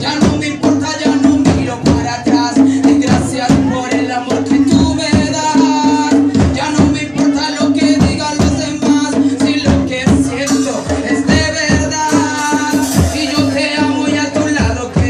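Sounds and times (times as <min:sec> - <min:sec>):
steady drum beat: 0:00.0 - 0:15.0
loud music through sound system: 0:09.0 - 0:15.0.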